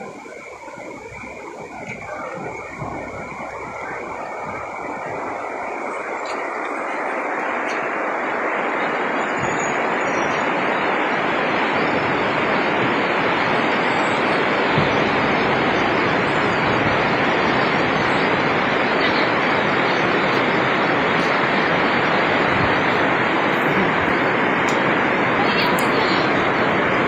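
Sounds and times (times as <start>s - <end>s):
heavy rain: 0.0s - 27.0s.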